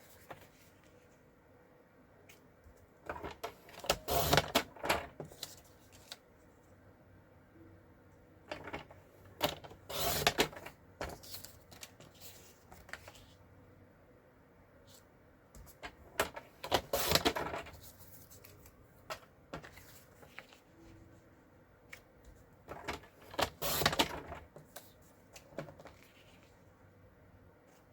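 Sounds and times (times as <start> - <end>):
paper handling: 3.1 - 6.2, 9.4 - 13.4, 15.6 - 21.0
paper trimmer blade sliding: 9.9 - 10.5.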